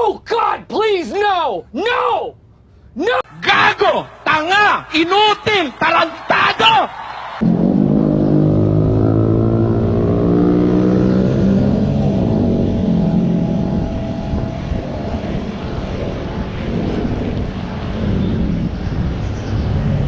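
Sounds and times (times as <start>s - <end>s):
road noise: 0.0s - 20.0s
vehicle engine droning: 7.4s - 20.0s.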